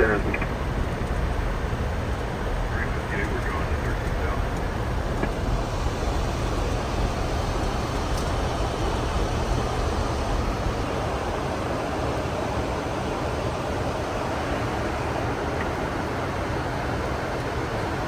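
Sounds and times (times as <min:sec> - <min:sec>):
rushing airflow: 0:00.0 - 0:11.0
aircraft engine noise: 0:00.0 - 0:17.6.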